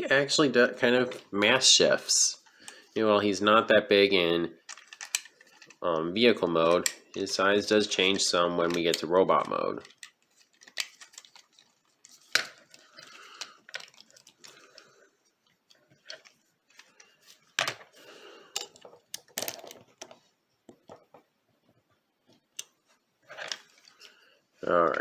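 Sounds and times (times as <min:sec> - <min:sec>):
plastic toy parts clicking: 0:04.6 - 0:05.8, 0:06.7 - 0:07.1, 0:08.1 - 0:14.5
plastic scraping and rubbing: 0:07.9 - 0:18.0.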